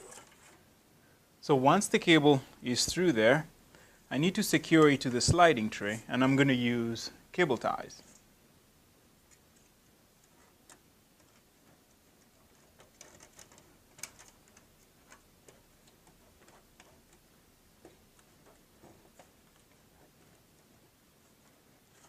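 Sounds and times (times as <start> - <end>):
cable ties clicking: 9.3 - 20.6.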